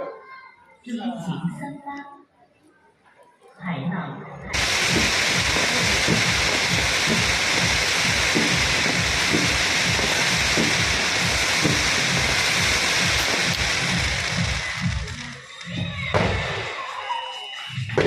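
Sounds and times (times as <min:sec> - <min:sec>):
fireworks crackling: 0:04.5 - 0:18.0
low fireworks booms: 0:04.5 - 0:18.0.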